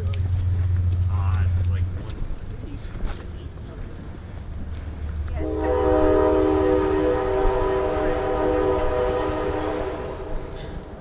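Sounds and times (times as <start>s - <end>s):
low rumble: 0.0s - 11.0s
train horn blast: 5.4s - 11.0s.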